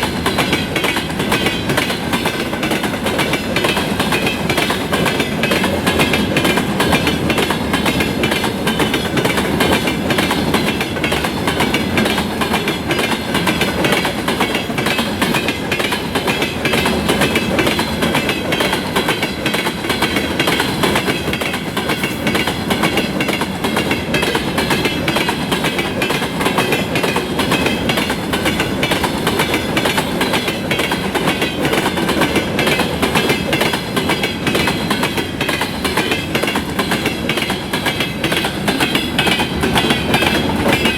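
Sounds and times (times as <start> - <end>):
freight train wheels clacking: 0.0 - 40.9.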